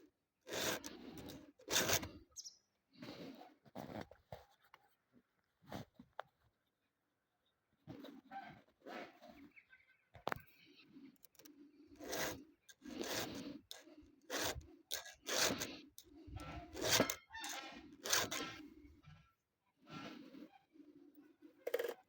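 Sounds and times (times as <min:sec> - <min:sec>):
slow scraping strokes: 0:00.5 - 0:02.2, 0:11.0 - 0:19.2.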